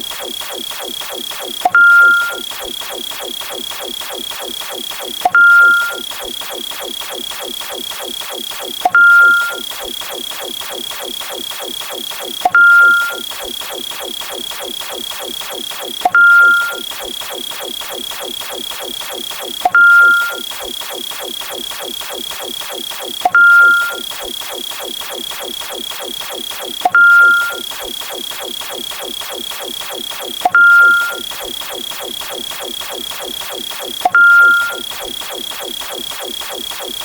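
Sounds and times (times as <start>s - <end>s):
loud beep sound effect: 1.9s - 2.5s, 5.5s - 6.1s, 9.2s - 9.6s, 12.8s - 13.2s, 16.2s - 16.9s, 19.8s - 20.5s, 23.4s - 24.1s, 26.9s - 27.7s, 30.5s - 31.3s, 34.1s - 34.9s.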